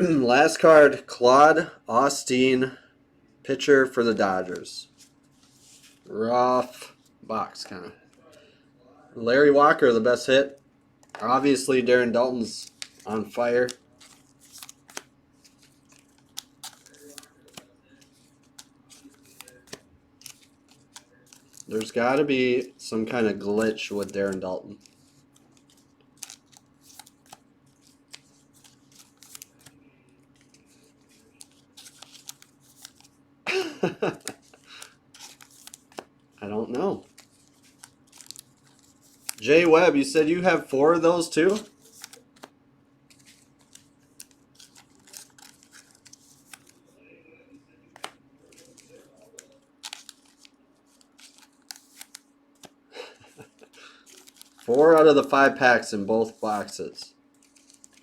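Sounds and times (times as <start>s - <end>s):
trading cards clicking and sliding: 12.4s - 33.2s, 34.1s - 36.1s, 37.0s - 40.0s, 41.2s - 42.5s, 43.1s - 46.8s, 47.9s - 55.4s, 56.2s - 58.0s.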